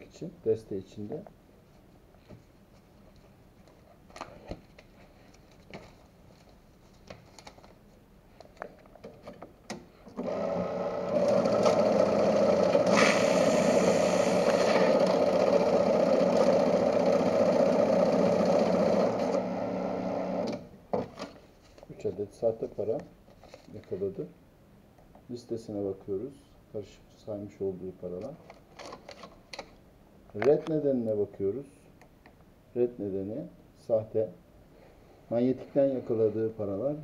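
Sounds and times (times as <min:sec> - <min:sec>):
banknote counter whirring: 0:10.2 - 0:20.6.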